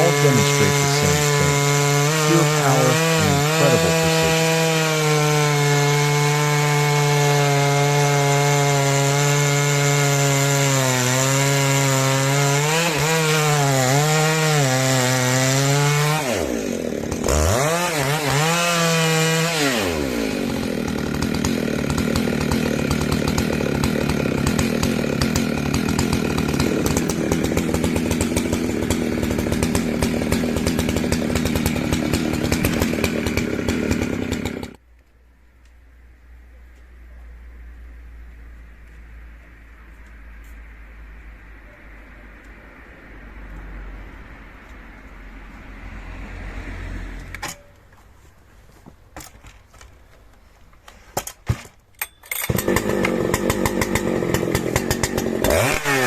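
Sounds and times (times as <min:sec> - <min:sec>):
chainsaw cutting wood: 0:00.0 - 0:34.8, 0:51.1 - 0:56.0.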